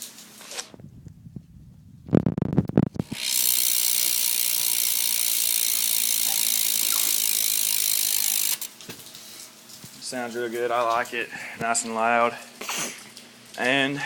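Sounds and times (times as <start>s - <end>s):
freewheel hub clicking buzz: 2.7s - 8.7s.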